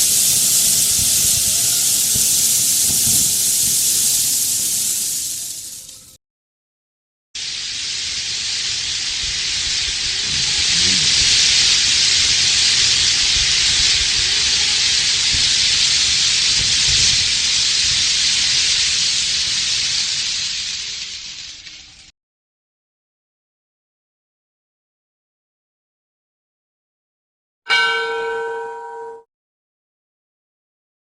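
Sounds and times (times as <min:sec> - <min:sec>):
firework spraying sparks hissing: 0:00.0 - 0:06.2, 0:07.4 - 0:22.1.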